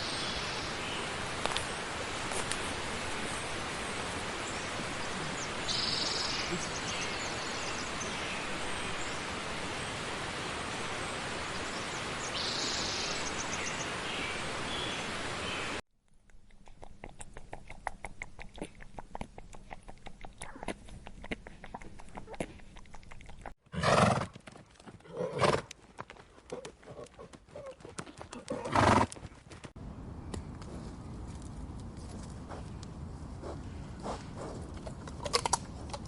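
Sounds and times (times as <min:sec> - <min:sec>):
horse whinnies: 0:23.7 - 0:24.3.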